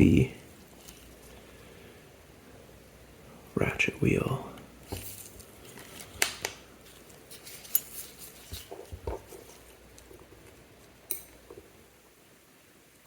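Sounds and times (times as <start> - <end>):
metallic clicks of small tools: 11.1 - 11.4.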